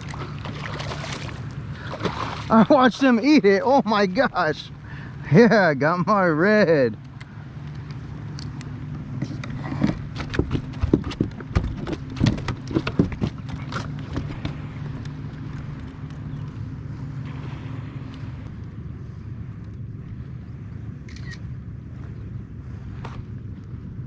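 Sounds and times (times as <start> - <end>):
fish thrashing against a kayak: 0.0 - 5.1, 9.2 - 16.6
steady low hum: 0.0 - 24.0.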